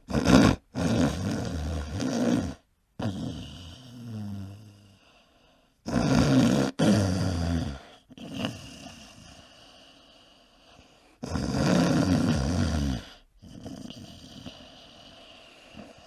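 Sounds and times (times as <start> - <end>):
man snoring: 0.1 - 5.0, 5.8 - 9.4, 11.2 - 16.0
breathy breaths: 4.7 - 5.9, 7.7 - 11.2, 13.0 - 16.0.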